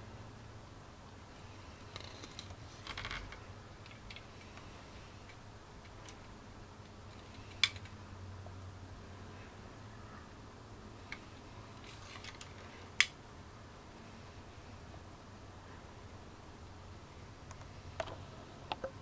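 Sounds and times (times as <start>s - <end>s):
low steady hum: 0.0s - 19.0s
small handling clicks: 1.9s - 8.0s.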